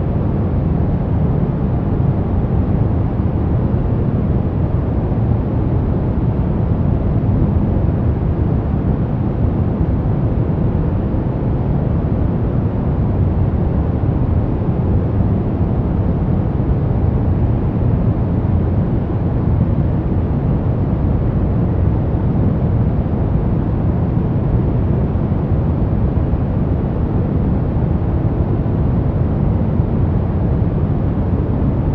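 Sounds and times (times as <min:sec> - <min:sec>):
deep rumbling white noise: 0:00.0 - 0:31.9.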